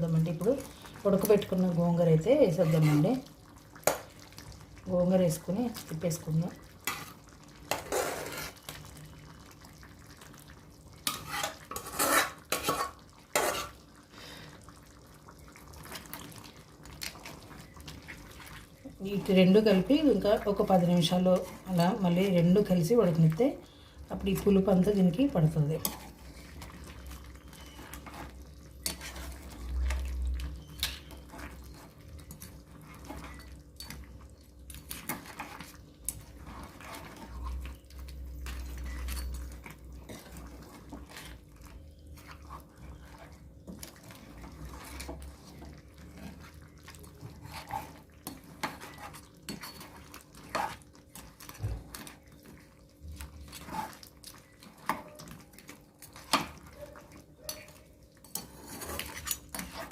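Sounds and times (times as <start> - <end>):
metal spoon clinking and scraping: 38.4 - 39.5, 57.5 - 59.9.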